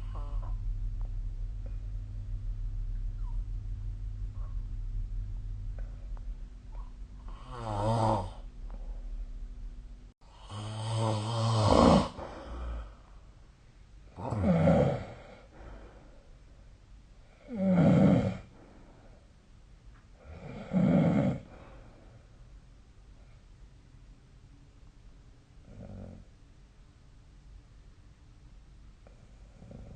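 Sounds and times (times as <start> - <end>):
low steady hum: 0.0 - 29.9
person snoring: 7.2 - 9.0, 10.3 - 13.0, 14.2 - 15.5, 17.4 - 18.6, 20.2 - 21.7.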